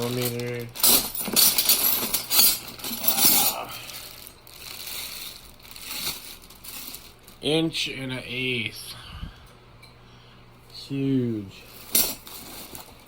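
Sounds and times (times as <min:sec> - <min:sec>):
metal wrenches clinking: 0:00.0 - 0:03.6, 0:11.8 - 0:12.9.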